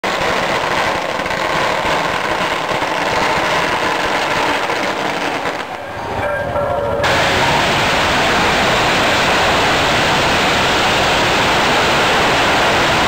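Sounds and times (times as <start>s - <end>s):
firecrackers crackling: 0.0s - 13.0s.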